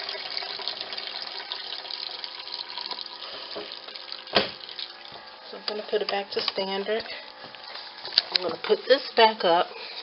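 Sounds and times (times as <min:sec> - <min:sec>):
water splashing into pail: 0:00.0 - 0:05.4.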